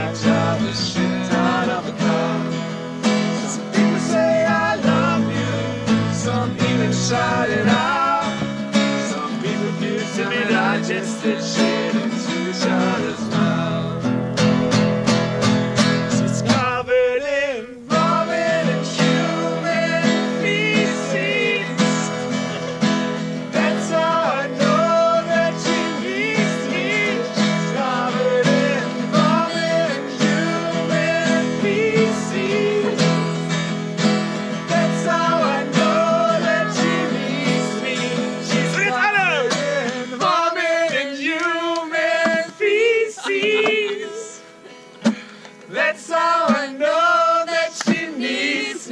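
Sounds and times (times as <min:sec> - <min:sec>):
acoustic guitar strumming: 0:00.0 - 0:48.9
person singing: 0:03.3 - 0:14.2, 0:15.2 - 0:22.8, 0:23.5 - 0:33.5, 0:34.6 - 0:44.8.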